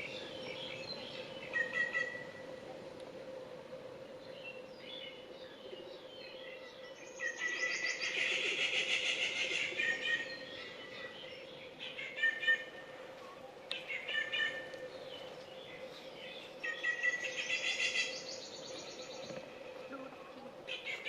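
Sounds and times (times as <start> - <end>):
birds chirping: 0.0 - 3.0, 3.8 - 21.0
steady low hum: 0.0 - 21.0.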